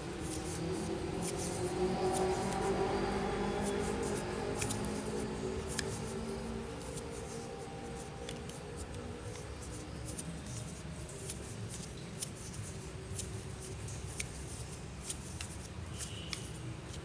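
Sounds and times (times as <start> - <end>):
hands rustling: 3.6 - 9.4.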